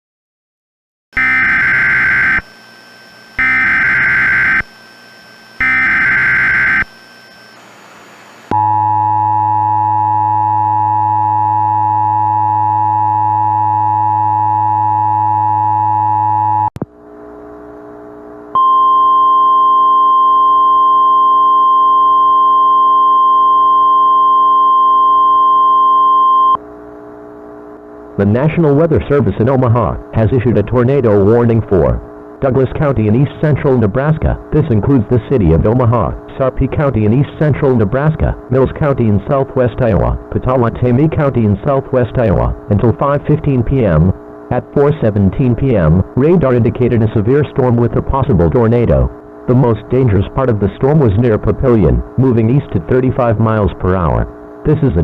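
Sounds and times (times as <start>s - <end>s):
two-tone attention signal: 1.2s - 2.6s, 3.2s - 7.6s
steady alert tone: 1.2s - 7.6s
warbling data bursts: 1.2s - 8.5s.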